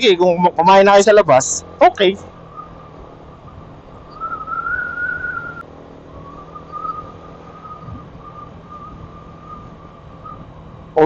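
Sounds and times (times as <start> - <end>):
motorcycle hum: 0.0 - 11.0
high wavering whistle: 2.4 - 10.6.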